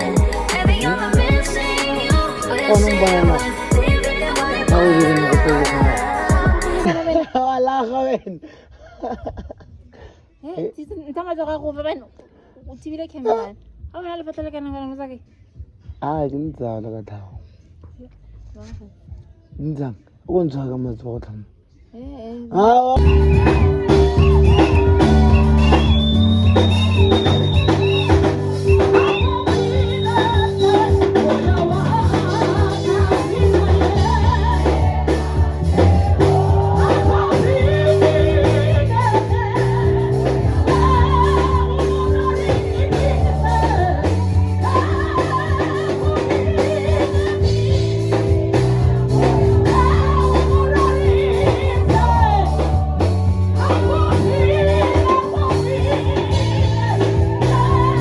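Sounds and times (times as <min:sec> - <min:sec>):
song with singing bass and drums: 0:00.0 - 0:07.3, 0:23.0 - 0:58.0.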